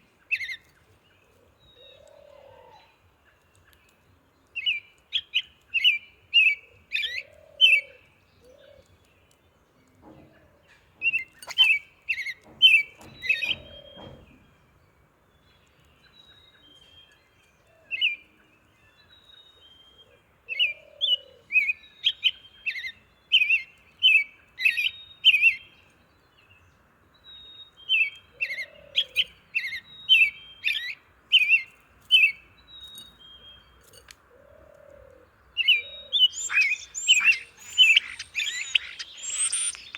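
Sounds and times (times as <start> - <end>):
birds chirping: 8.8 - 17.4, 32.8 - 39.9
low soft bird call: 35.6 - 39.9.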